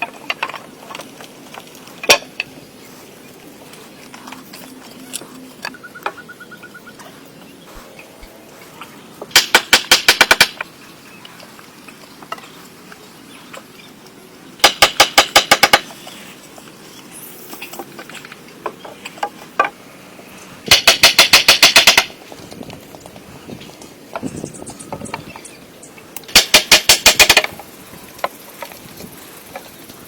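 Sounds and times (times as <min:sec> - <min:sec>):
rapid sharp knocks: 0:09.3 - 0:10.6, 0:14.6 - 0:16.0, 0:20.7 - 0:22.2, 0:26.3 - 0:27.6.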